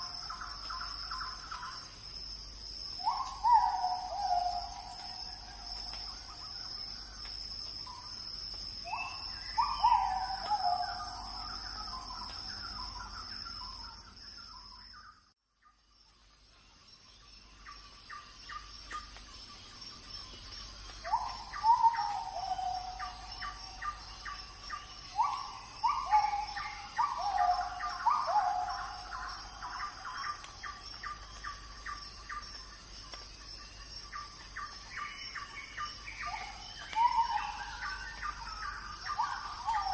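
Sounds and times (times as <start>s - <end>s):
high insect drone: 0.0s - 15.2s, 16.0s - 39.9s
birds calling and chirping: 8.8s - 15.2s, 17.2s - 39.9s.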